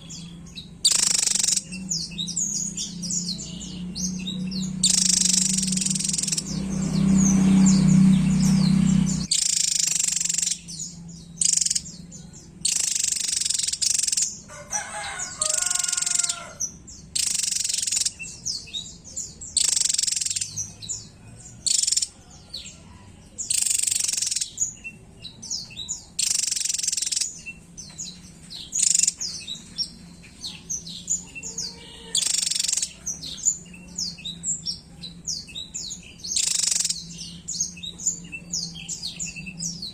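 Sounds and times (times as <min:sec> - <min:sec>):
bird singing high phrases: 0:00.0 - 0:39.9
low hum: 0:01.6 - 0:09.4.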